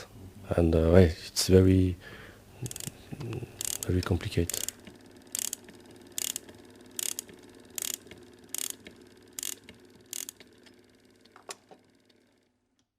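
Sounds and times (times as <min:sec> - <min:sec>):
ratchet clicks: 0:02.6 - 0:03.0, 0:03.6 - 0:12.2
gears whirring: 0:02.6 - 0:12.4.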